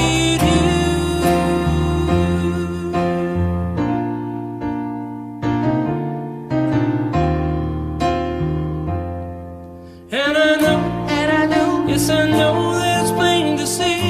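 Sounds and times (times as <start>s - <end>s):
person singing: 0.0s - 4.0s, 10.0s - 14.0s
piano playing slow chords: 0.0s - 14.0s.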